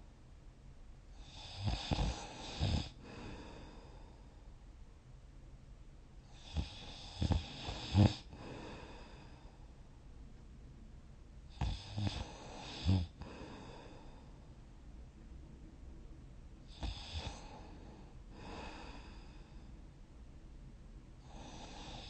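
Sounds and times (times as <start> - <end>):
faint breathing: 1.1 - 4.6, 6.2 - 10.0, 11.5 - 14.7, 16.6 - 20.0, 21.2 - 22.0
person snoring: 1.2 - 3.9, 6.3 - 9.4, 11.5 - 14.3, 16.7 - 19.6, 21.2 - 22.0.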